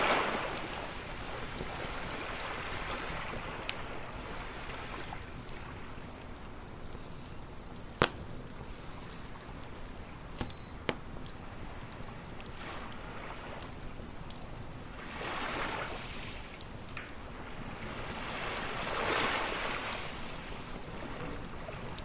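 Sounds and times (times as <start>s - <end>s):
ocean waves on a beach: 0.0s - 22.0s
wood fire crackling and popping: 0.0s - 22.0s.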